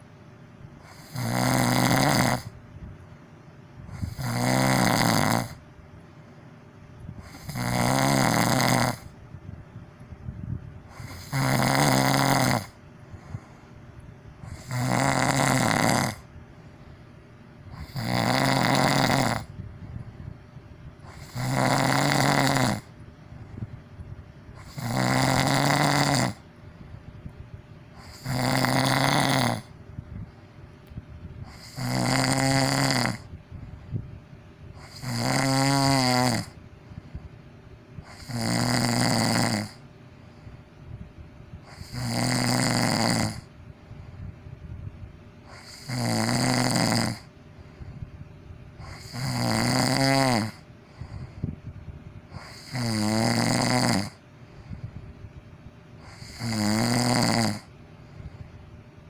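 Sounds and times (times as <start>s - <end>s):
quiet breaths: 0.0s - 59.0s
person snoring loudly: 0.8s - 2.6s, 3.9s - 5.6s, 7.2s - 9.2s, 10.9s - 13.5s, 14.4s - 16.3s, 17.7s - 19.6s, 21.0s - 23.0s, 24.6s - 26.4s, 28.0s - 29.8s, 31.4s - 33.4s, 34.8s - 36.6s, 38.0s - 39.8s, 41.6s - 43.6s, 45.4s - 47.3s, 48.8s - 51.5s, 52.3s - 54.7s, 56.0s - 57.7s.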